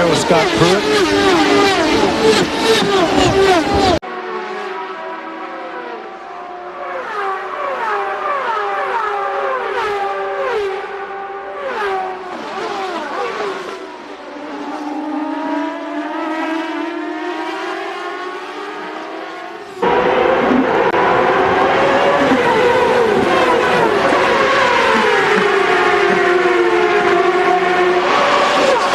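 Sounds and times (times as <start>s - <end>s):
racing engines screaming past: 0.0s - 28.9s.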